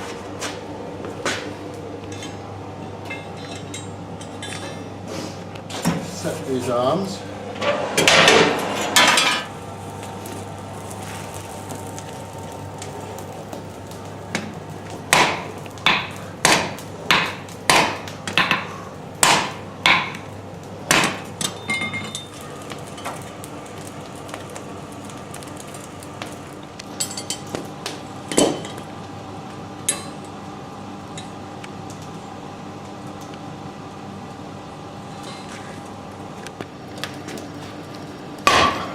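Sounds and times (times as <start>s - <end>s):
hammer striking steel: 15.1s - 20.2s.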